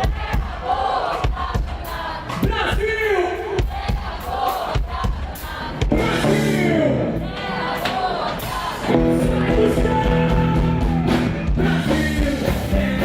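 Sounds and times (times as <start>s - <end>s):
live rock band playing: 5.8s - 7.2s, 8.9s - 13.0s
person singing: 8.8s - 13.0s.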